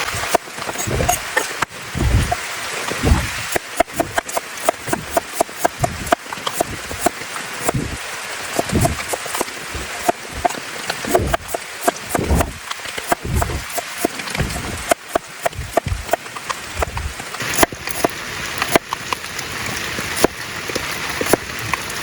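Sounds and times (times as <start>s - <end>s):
steady rain: 0.0s - 22.0s
dull low thuds: 2.0s - 2.4s, 3.0s - 8.0s, 8.6s - 10.5s, 11.1s - 13.8s, 14.4s - 16.2s, 16.8s - 17.8s
knife chopping on cutting board: 3.0s - 8.0s, 8.6s - 16.2s.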